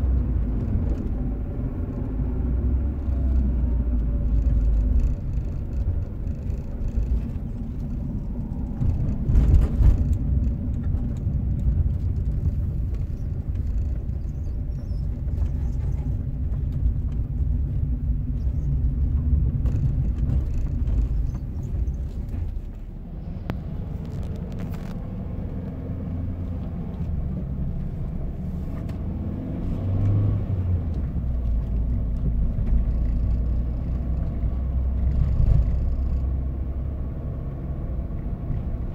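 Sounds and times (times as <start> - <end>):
car engine rumbling: 0.0 - 38.9
gearbox rattling and knocking: 3.1 - 22.9.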